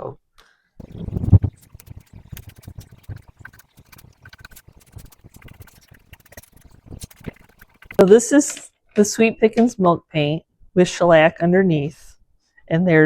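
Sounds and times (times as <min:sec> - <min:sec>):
paint stirred in plastic cup: 0:00.8 - 0:08.6
stirrer clicking against cup: 0:00.8 - 0:08.6.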